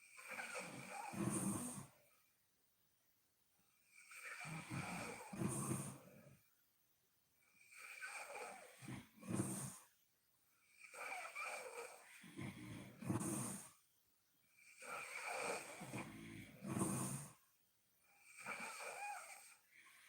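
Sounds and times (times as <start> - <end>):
woman snoring: 0.0 - 1.9, 3.9 - 6.2, 7.6 - 9.9, 10.7 - 13.8, 14.6 - 17.4, 18.2 - 20.0.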